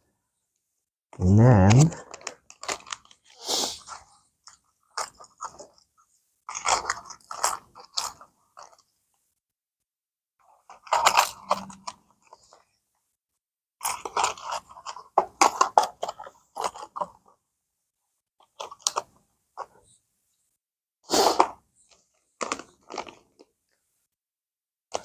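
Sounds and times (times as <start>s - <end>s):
packaging crinkling and rustling: 21.9s - 23.4s.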